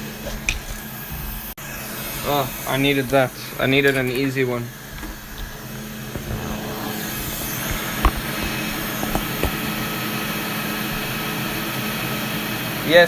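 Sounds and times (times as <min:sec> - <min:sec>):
blower rushing air: 0:04.6 - 0:12.8.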